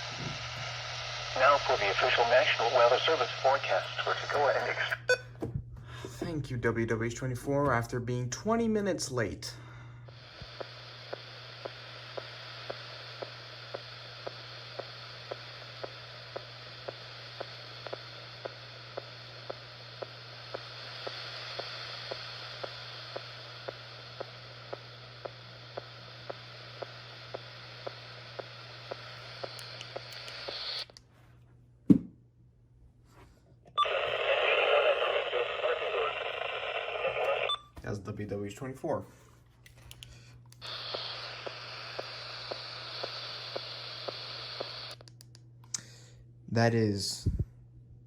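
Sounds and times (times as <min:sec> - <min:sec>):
radio static hiss and hum: 0:00.0 - 0:05.2, 0:10.1 - 0:31.0, 0:33.8 - 0:37.6, 0:40.6 - 0:45.0.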